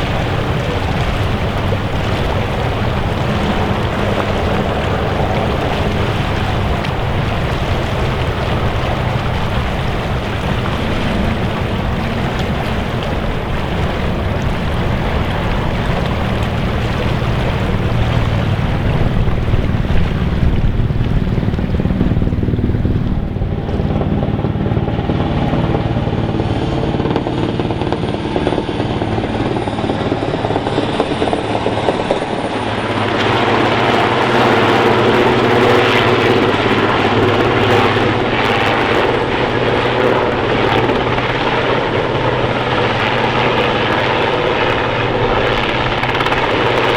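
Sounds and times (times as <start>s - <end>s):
higher engine note: 0.0s - 38.8s
large engine droning: 0.0s - 46.9s.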